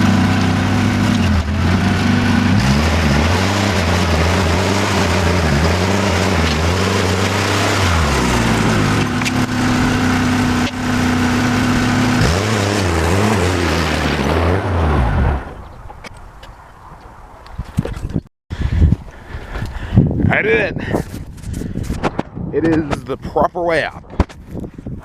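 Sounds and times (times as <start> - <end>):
tractor engine running: 0.0 - 16.2.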